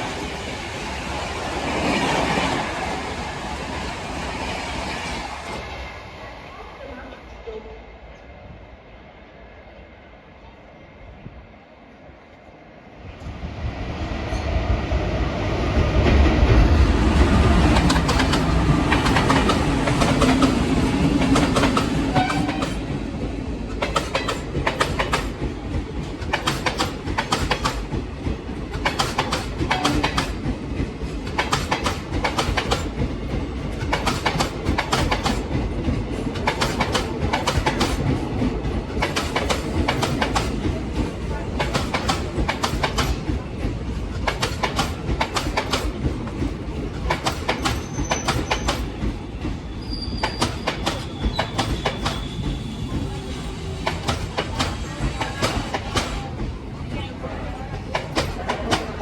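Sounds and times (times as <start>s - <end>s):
train rumble: 0.0s - 9.6s, 12.1s - 59.0s
train wheels clattering over rail joints: 15.9s - 57.0s, 57.6s - 59.0s.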